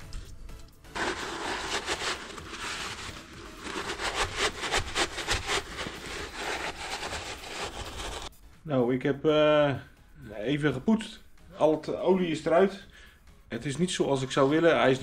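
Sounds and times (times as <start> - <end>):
brush scrubbing metal housing: 0.9 - 8.3.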